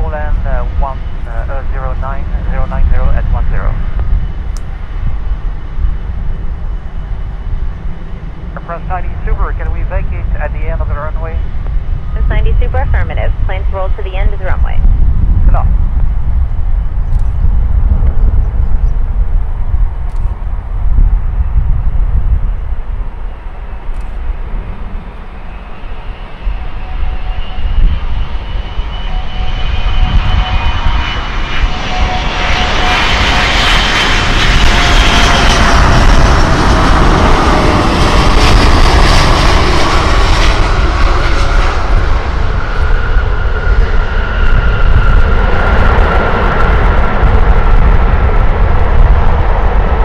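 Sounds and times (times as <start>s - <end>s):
jet engines roaring: 0.0s - 50.0s
whining tones sliding down: 20.0s - 32.8s.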